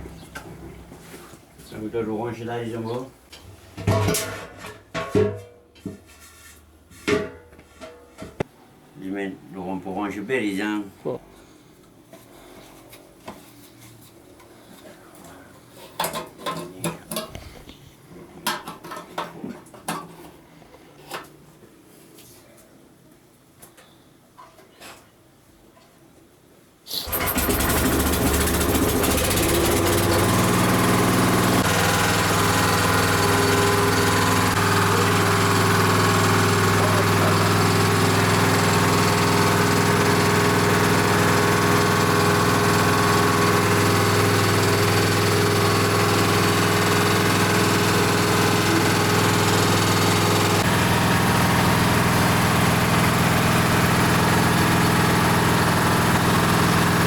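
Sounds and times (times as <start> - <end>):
engine running: 26.9 - 57.0.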